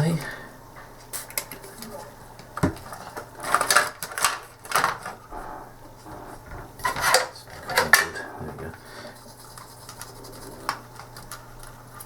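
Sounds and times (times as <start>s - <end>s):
scratchy rubbing strokes: 8.1s - 10.7s.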